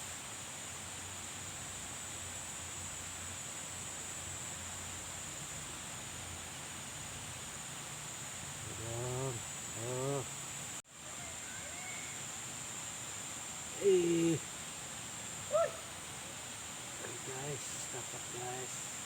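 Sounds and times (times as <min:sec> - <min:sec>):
even hiss: 0:00.0 - 0:19.0
high-pitched insect drone: 0:08.1 - 0:19.0.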